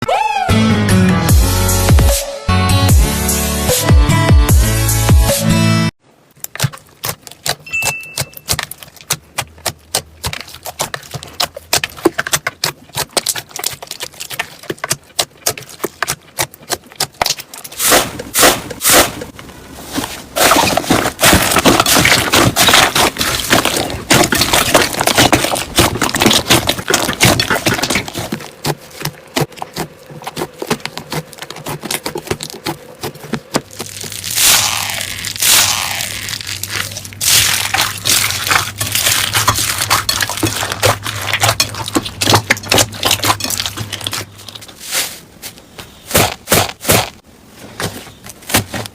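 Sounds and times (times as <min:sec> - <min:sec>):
slime clicking and popping: 0:06.4 - 0:14.4.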